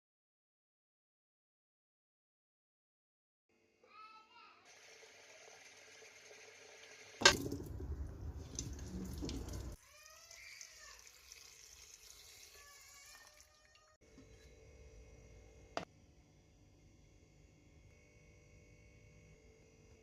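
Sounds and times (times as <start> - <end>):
water running: 4.7 - 14.0.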